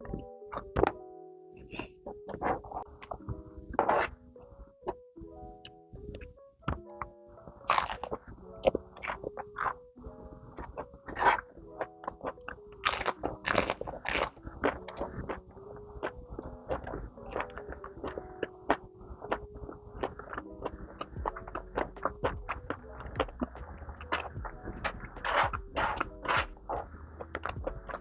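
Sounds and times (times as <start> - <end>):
soft background music: 0.0 - 28.0
crunchy bites and chewing: 7.4 - 9.8, 10.6 - 28.0.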